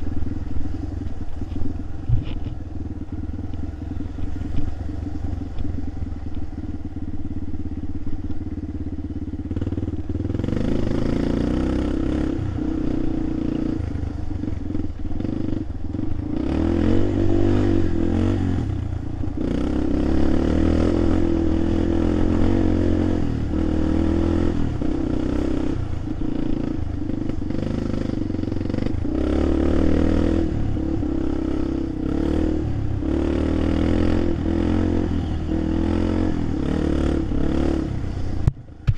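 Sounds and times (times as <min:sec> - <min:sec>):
vehicle engine revving: 0:09.4 - 0:38.5.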